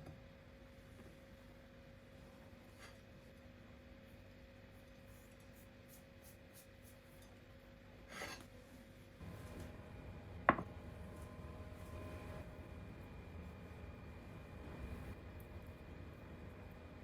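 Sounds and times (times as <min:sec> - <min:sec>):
low hum: 0:09.2 - 0:17.0.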